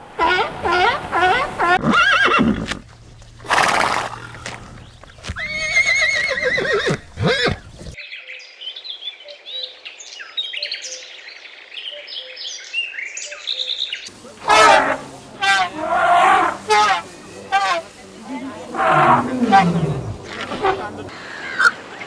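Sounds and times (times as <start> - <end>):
horse neighing: 3.5 - 4.6, 5.4 - 7.6, 14.4 - 21.1
horse snorting: 3.5 - 4.7, 14.4 - 21.1.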